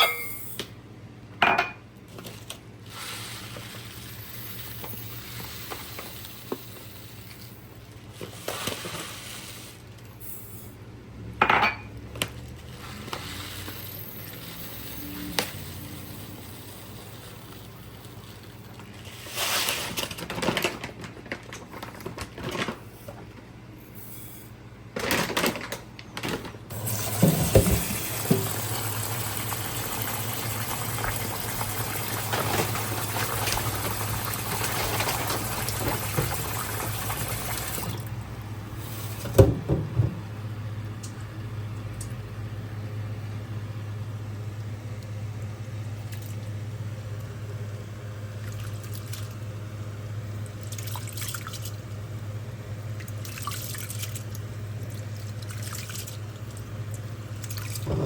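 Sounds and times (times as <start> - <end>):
pots and utensils clinking: 0.0 - 0.7, 11.4 - 12.0
water running from tap: 26.7 - 38.2.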